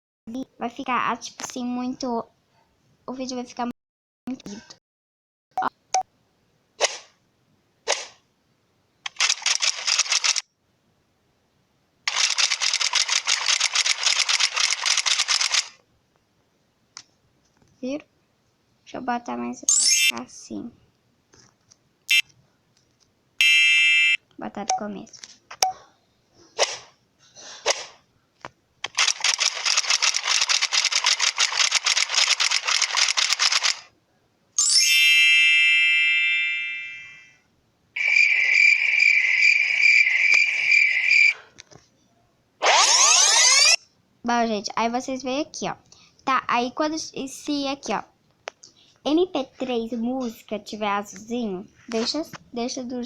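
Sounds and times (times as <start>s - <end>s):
rapid clicking: 12.1s - 15.8s, 28.8s - 33.8s.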